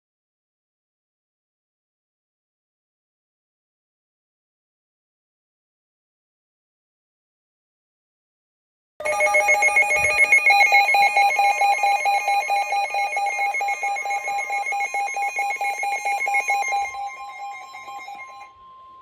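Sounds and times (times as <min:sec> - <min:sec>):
faint steady single tone: 0:09.0 - 0:19.0
warbling emergency alert tone: 0:09.0 - 0:19.0.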